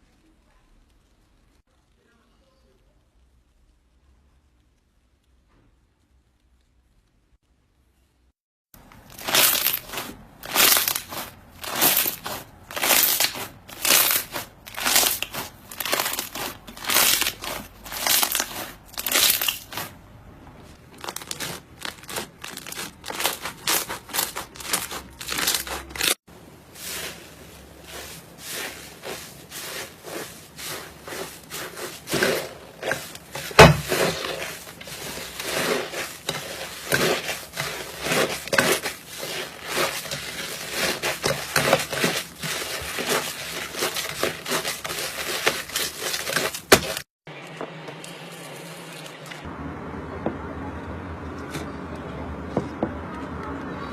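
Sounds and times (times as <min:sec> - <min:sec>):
slime squishing and crackling: 0:08.8 - 0:20.0, 0:20.6 - 0:47.1.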